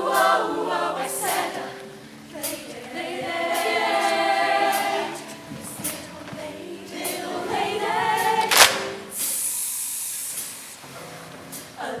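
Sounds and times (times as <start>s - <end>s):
choir singing: 0.0s - 9.5s, 11.8s - 12.0s
steady hiss-like wash: 0.0s - 12.0s
band accompaniment: 8.2s - 9.3s.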